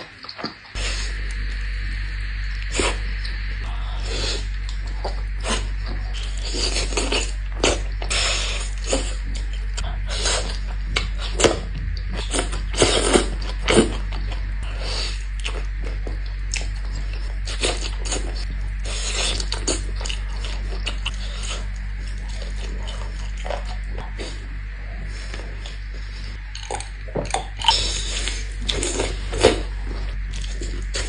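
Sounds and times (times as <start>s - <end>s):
steady low hum: 0.0s - 31.0s
biting and chewing meat: 4.6s - 24.6s.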